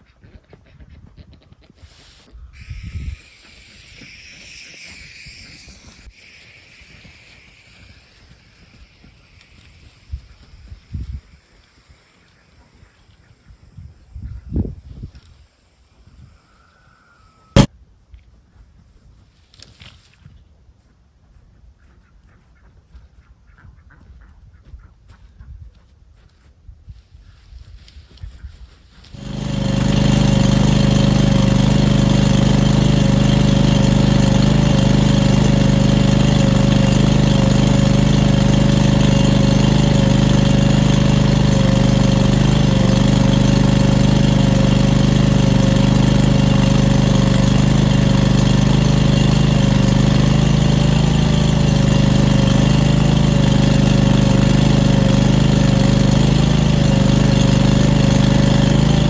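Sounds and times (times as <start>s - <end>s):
engine running steadily: 29.0s - 59.0s.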